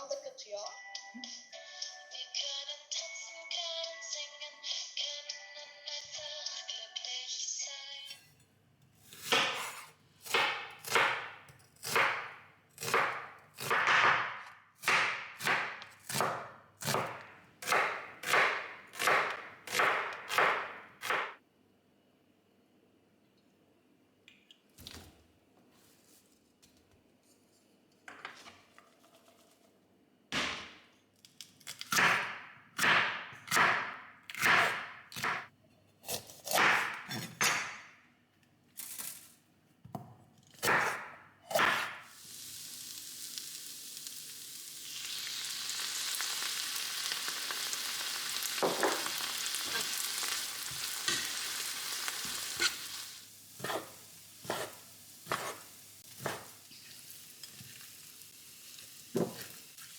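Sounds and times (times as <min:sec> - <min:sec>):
food sizzling in a frying pan: 0:42.1 - 0:59.9.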